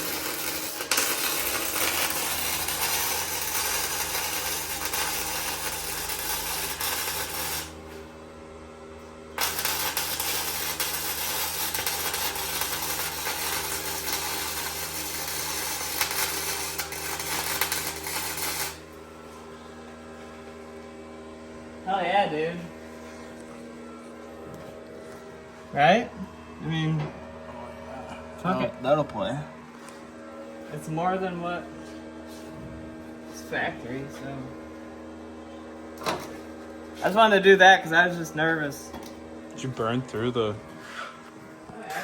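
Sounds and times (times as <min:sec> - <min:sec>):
welding arc crackling: 0:00.0 - 0:08.1, 0:09.3 - 0:19.0
machine hum: 0:00.0 - 0:42.0.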